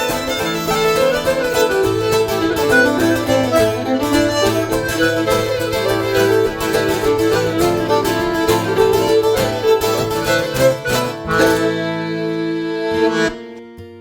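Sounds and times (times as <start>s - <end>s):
instrumental folk music: 0.0s - 14.0s.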